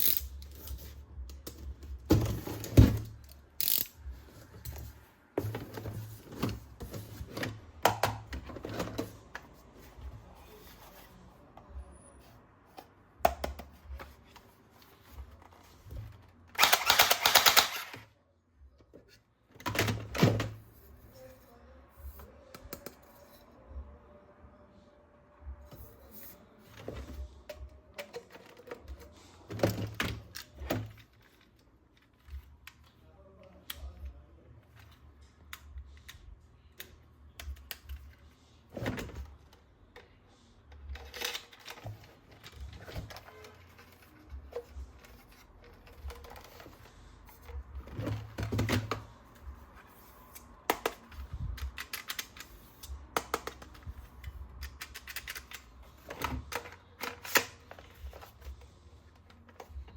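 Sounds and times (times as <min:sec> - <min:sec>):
plastic parts clicking and tapping: 0:13.2 - 0:18.0, 0:50.3 - 0:59.9.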